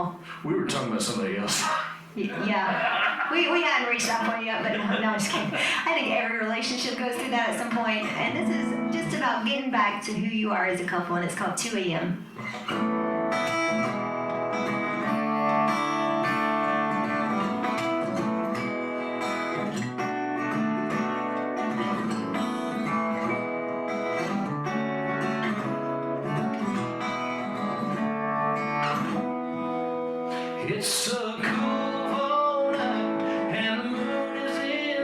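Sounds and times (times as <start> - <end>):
acoustic guitar chords: 0.0 - 10.4, 11.3 - 35.0.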